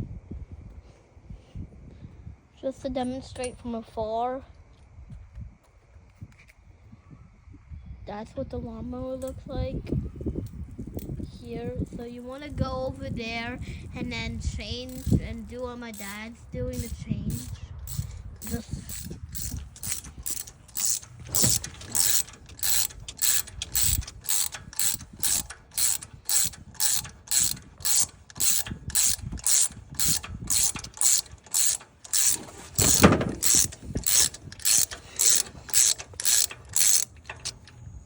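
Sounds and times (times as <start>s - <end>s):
ratchet wrench clicking: 14.8s - 37.8s.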